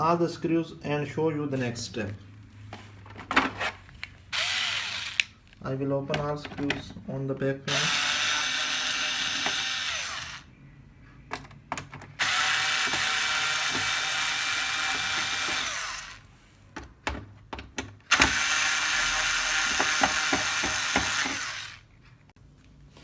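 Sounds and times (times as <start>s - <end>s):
cordless electric screwdriver running: 4.4s - 5.4s, 7.7s - 10.5s, 12.2s - 16.3s, 18.1s - 21.9s.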